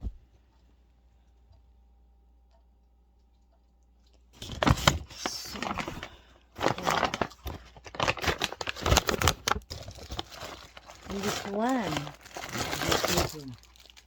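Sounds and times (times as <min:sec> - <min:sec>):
packaging crinkling and tearing: 0:04.4 - 0:14.0.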